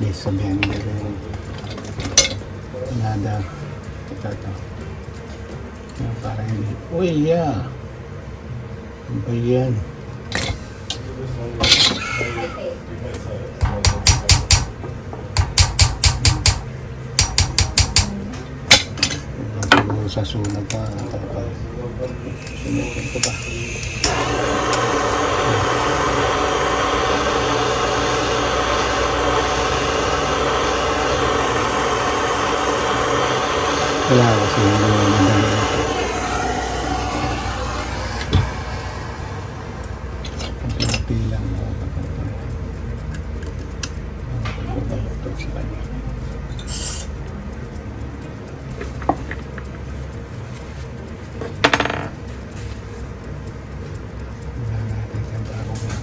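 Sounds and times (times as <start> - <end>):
low hum: 21.4 - 48.7
gas torch flame rushing: 22.2 - 41.5.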